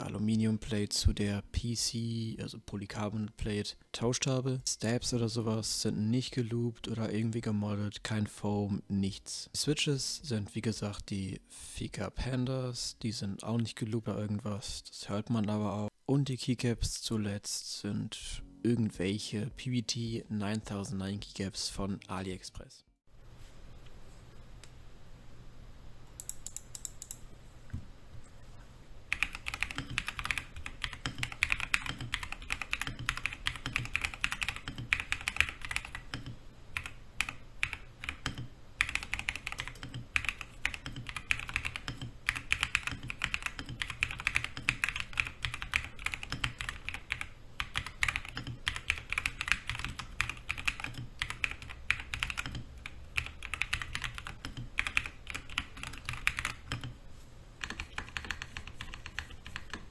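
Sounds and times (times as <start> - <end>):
mechanical keyboard typing: 26.2 - 27.2, 29.1 - 56.9, 57.6 - 59.9.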